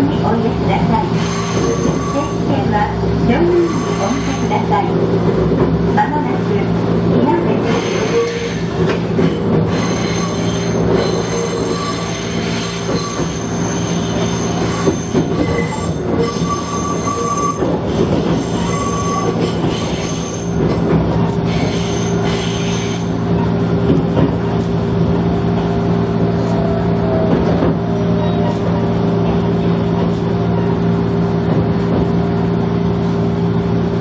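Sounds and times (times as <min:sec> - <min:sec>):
electric train motor hum: 0:00.2 - 0:23.3
train wheels rolling: 0:01.0 - 0:02.5, 0:07.6 - 0:26.6
wheels squealing: 0:01.0 - 0:02.5, 0:03.5 - 0:04.6, 0:09.7 - 0:17.7, 0:18.4 - 0:20.7.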